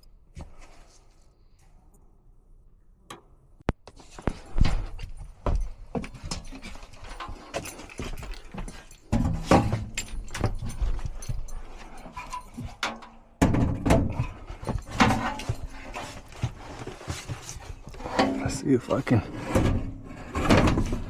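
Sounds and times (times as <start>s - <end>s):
metal parts knocking and clunking: 5.6s - 21.0s.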